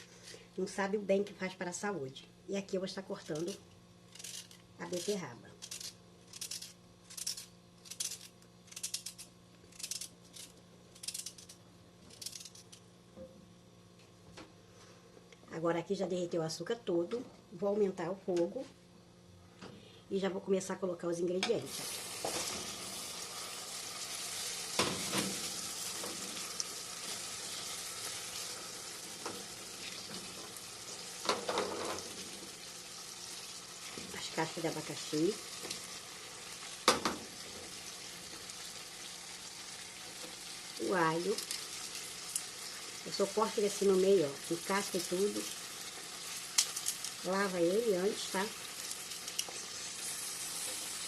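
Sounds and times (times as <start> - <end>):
sugar sizzling in a pot: 21.6 - 51.0.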